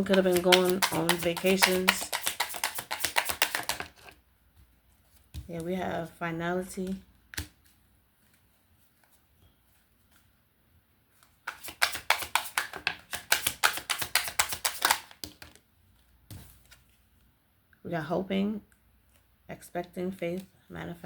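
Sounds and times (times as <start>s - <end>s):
cards being shuffled: 0.0s - 4.2s, 11.2s - 17.0s.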